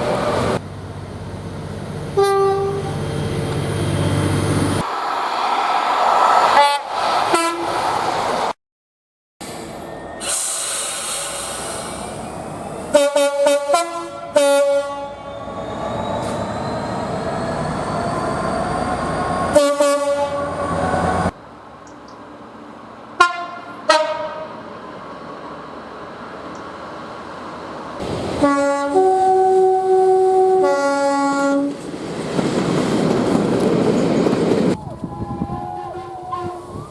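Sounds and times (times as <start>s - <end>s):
rumble of passing trains: 0.0s - 8.6s, 9.4s - 36.9s
locomotive air horn blasts: 2.2s - 3.0s, 6.6s - 7.8s, 12.9s - 15.3s, 19.5s - 20.7s, 23.2s - 24.6s, 28.4s - 31.8s, 35.8s - 36.7s.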